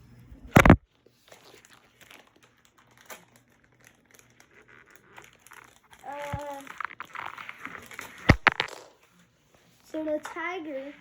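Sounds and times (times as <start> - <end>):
plastic packaging crinkling: 0.6 - 9.2.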